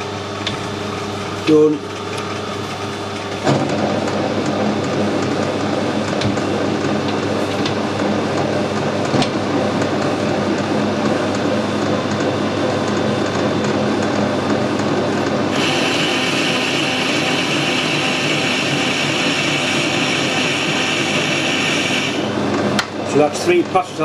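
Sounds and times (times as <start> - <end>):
metal lathe running: 0.0 - 24.0.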